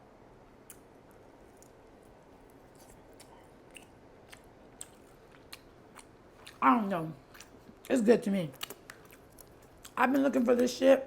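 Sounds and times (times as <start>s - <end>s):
chewing mouth clicks: 2.6s - 6.6s, 8.6s - 10.0s.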